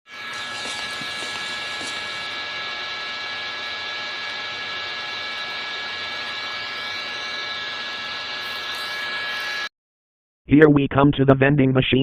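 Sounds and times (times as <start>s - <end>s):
high steady whining tones: 0.1s - 9.7s
mechanical hum and hiss: 0.1s - 9.7s.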